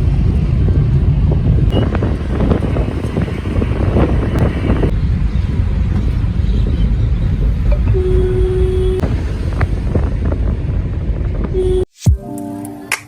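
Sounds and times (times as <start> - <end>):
wind buffeting microphone: 0.0 - 11.8
low rumble: 0.0 - 11.9
short steady tone: 7.7 - 9.0.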